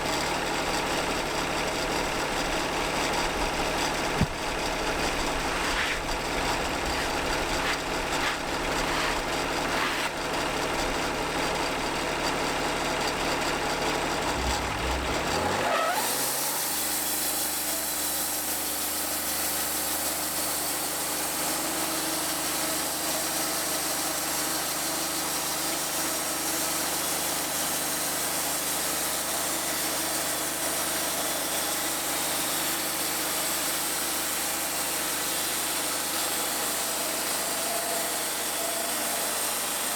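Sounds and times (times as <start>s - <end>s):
sawmill engine idling and revving: 0.0s - 39.9s
band saw hissing: 4.2s - 10.5s, 15.8s - 39.9s.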